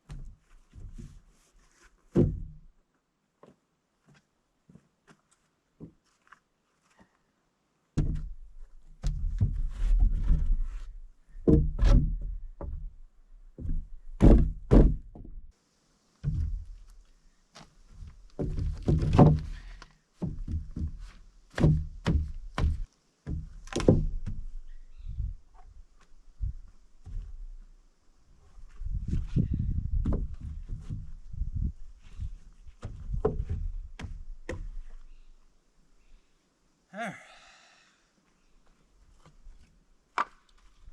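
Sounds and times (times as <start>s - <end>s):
lumber thumping on wooden frame: 2.1s - 2.7s, 8.0s - 13.0s, 13.6s - 15.4s, 16.2s - 16.8s, 17.9s - 25.2s, 26.4s - 27.6s, 29.0s - 35.0s.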